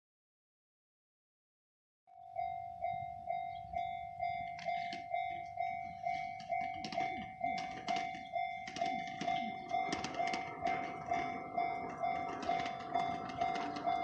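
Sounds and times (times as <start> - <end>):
level crossing warning bell: 2.1 - 14.0
sharp clicks and knocks: 4.4 - 5.1, 6.4 - 14.0.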